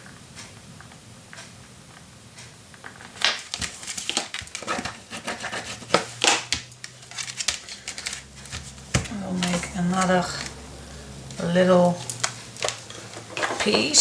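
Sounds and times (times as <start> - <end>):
paper rustling and scraping: 3.0 - 10.6, 11.3 - 14.0.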